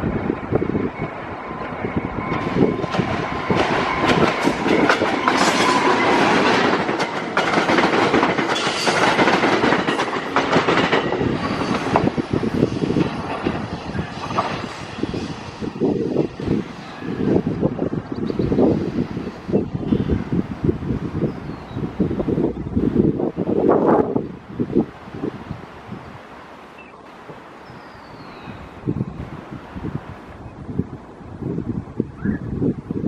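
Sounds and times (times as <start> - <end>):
train wheels clacking over rails: 1.5 - 17.0.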